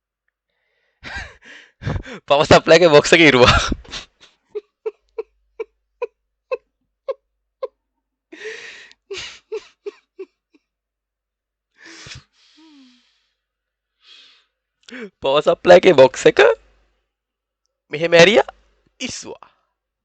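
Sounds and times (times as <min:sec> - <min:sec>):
person laughing breathily: 0:01.0 - 0:02.3, 0:03.4 - 0:10.7.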